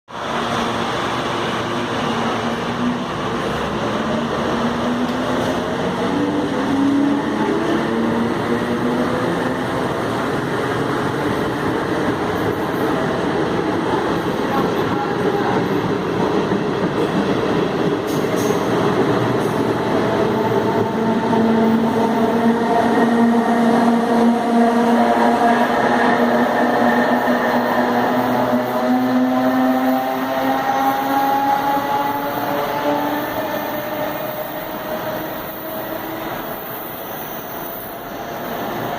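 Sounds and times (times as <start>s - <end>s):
electric train pulling away: 17.8s - 38.9s.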